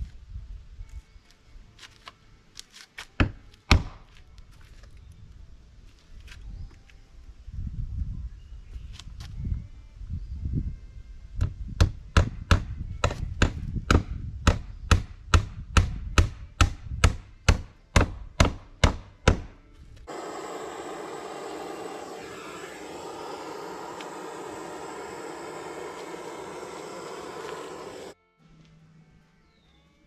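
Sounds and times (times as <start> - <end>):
steady rushing noise: 20.1 - 28.2.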